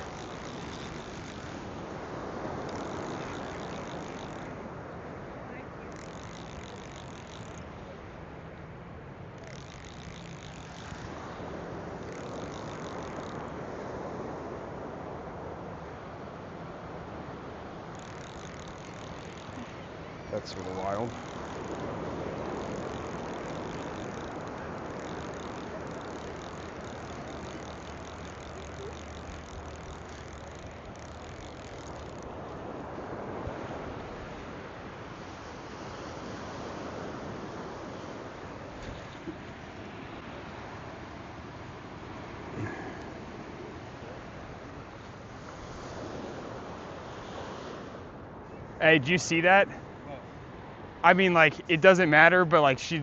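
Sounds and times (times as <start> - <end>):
faint rapid ticking: 0.0 - 1.8, 2.4 - 4.7, 5.9 - 7.8, 9.3 - 11.4, 12.0 - 13.5, 17.8 - 32.6
fishing reel clicking: 0.0 - 4.6, 5.9 - 7.8, 9.4 - 13.5, 17.8 - 32.6
surf: 0.0 - 53.0.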